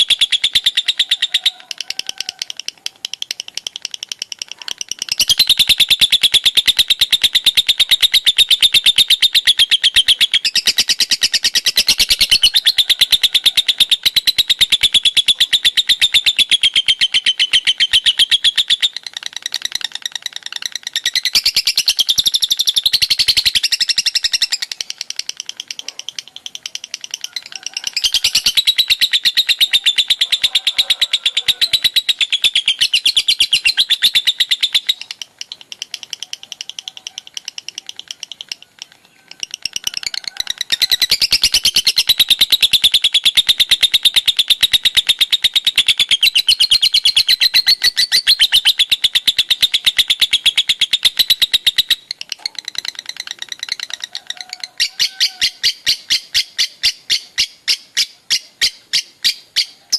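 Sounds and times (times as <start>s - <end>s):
lovebird rapid shrill chirps: 0.0s - 59.9s.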